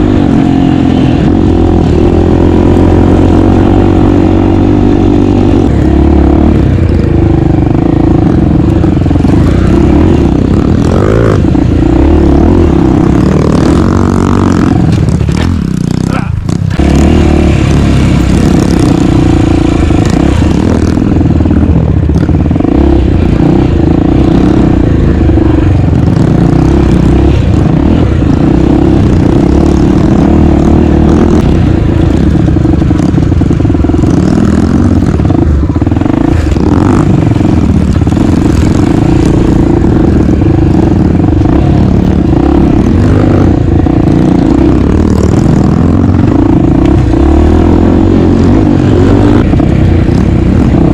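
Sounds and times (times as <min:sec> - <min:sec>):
motorcycle engine running: 0:00.0 - 0:50.9.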